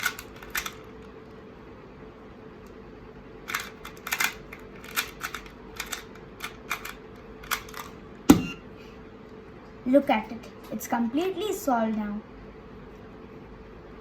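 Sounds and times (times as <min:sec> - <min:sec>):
plastic puzzle cube clacking: 0:00.0 - 0:00.8, 0:03.5 - 0:07.9
sharp knock: 0:08.3 - 0:08.6.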